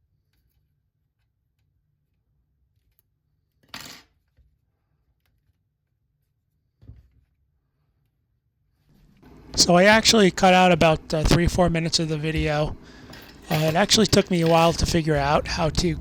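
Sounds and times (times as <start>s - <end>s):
hard parts clattering: 12.3s - 15.4s.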